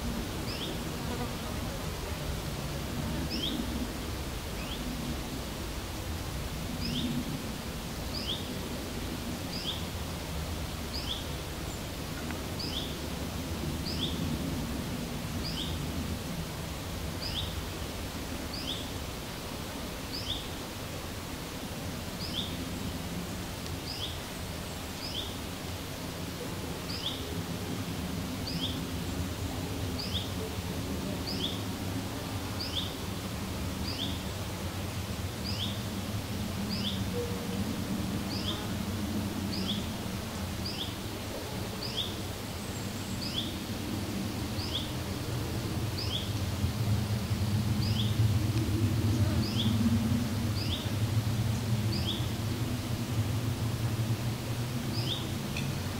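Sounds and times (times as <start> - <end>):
steady low rumble: 26.6 - 55.9.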